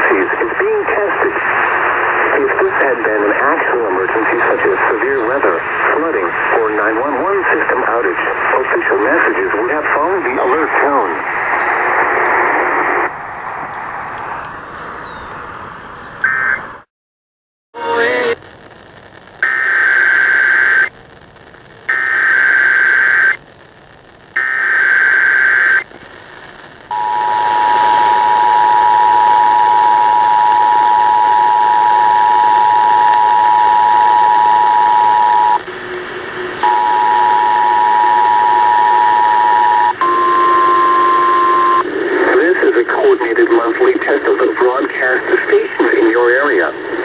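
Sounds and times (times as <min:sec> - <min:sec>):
short data bursts: 0:19.4 - 0:21.0, 0:21.9 - 0:23.4, 0:24.4 - 0:25.9, 0:26.9 - 0:47.0
single steady tone: 0:26.9 - 0:35.6, 0:36.6 - 0:41.8
two-tone attention signal: 0:26.9 - 0:35.6, 0:36.6 - 0:41.8
screeching header bursts: 0:26.9 - 0:41.9.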